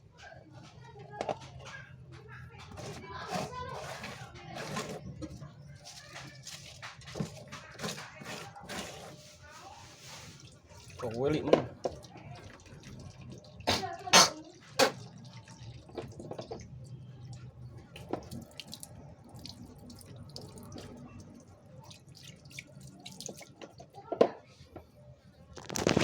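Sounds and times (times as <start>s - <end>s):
water splashing and dripping: 4.3s - 9.3s, 9.9s - 24.1s.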